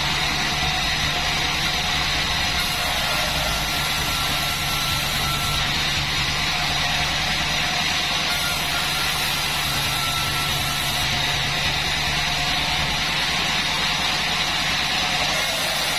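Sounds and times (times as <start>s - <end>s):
band sawmill hum and hiss: 0.0s - 15.9s
faint thin whistle: 4.3s - 5.6s.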